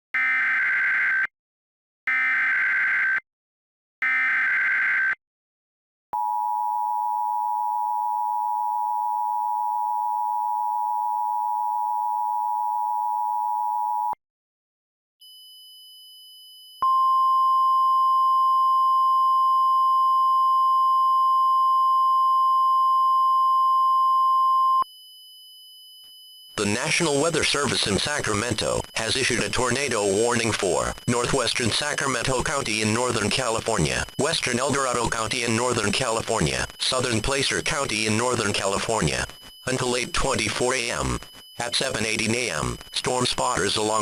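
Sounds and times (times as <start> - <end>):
squawking data header bursts: 26.6 - 44.0
two-tone attention signal: 36.8 - 44.0
steady alert tone: 37.0 - 44.0.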